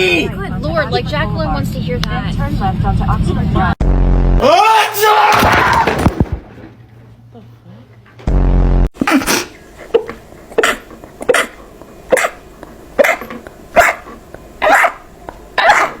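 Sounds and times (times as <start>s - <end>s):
person sneezing: 9.0s - 12.4s.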